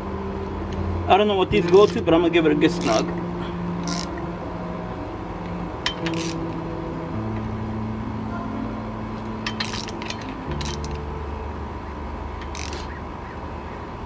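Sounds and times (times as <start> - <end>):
steady low hum: 0.0 - 14.0
hand tools clinking on metal: 2.7 - 3.1, 5.8 - 6.4, 9.4 - 11.0, 12.4 - 13.0.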